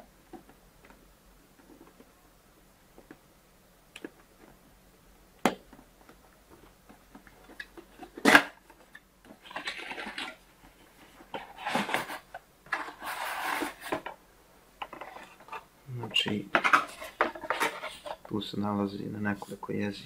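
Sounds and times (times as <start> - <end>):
cardboard packaging rustling: 9.3 - 14.2.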